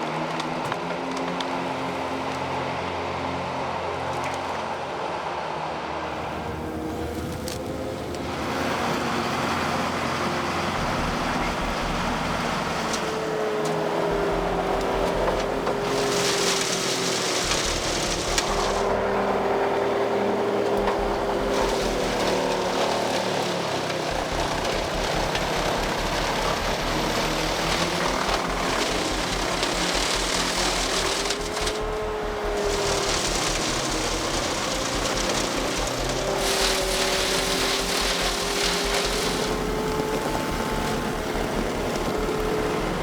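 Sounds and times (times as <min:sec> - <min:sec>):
wood chipper running: 0:00.0 - 0:43.0.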